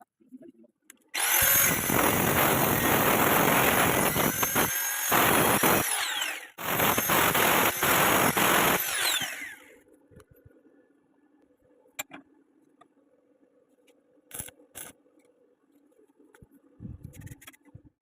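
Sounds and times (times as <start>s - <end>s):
power tool running: 1.2s - 9.7s.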